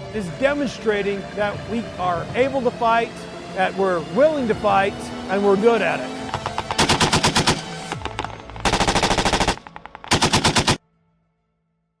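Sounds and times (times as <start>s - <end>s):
machine-gun fire bursts: 6.5s - 7.9s, 8.6s - 10.8s.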